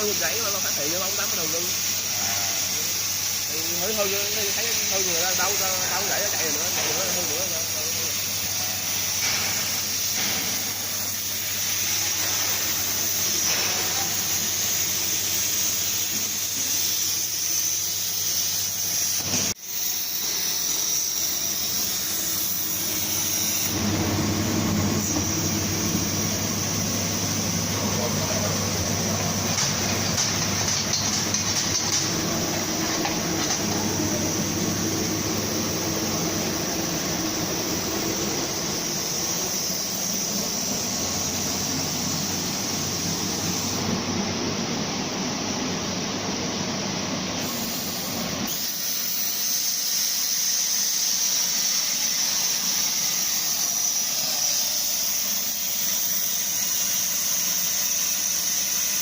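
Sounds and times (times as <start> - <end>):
plasma torch hissing and whining: 0.0 - 59.0
low machine hum: 21.6 - 42.7.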